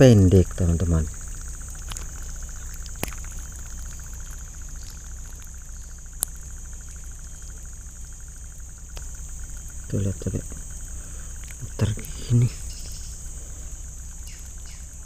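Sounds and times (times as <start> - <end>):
fast pulsing insect chirp: 0.0 - 15.0
insects droning: 0.0 - 15.0
low steady rumble: 0.0 - 15.0
sharp clicks: 1.2 - 7.8.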